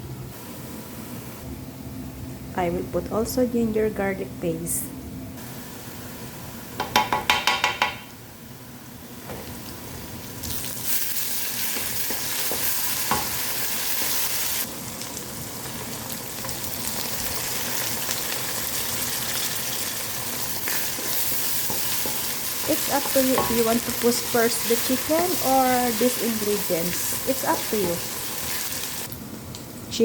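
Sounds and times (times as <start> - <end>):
onions sizzling in hot oil: 9.2 - 29.2.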